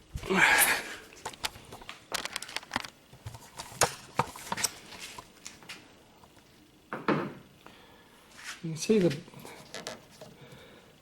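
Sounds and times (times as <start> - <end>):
plastic and rubber clicking and crackling: 1.2 - 4.7.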